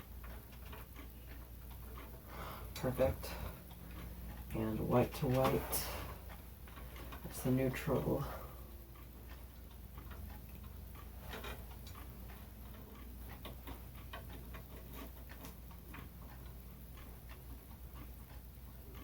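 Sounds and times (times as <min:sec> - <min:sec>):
small clicks of wires twisting: 0:09.0 - 0:19.0.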